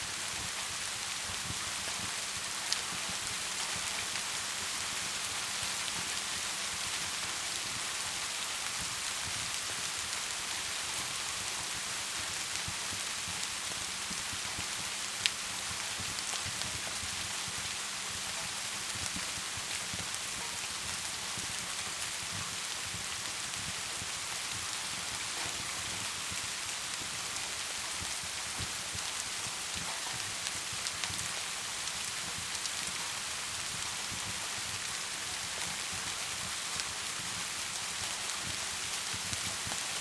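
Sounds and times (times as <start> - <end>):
wood fire crackling: 0.0 - 40.0.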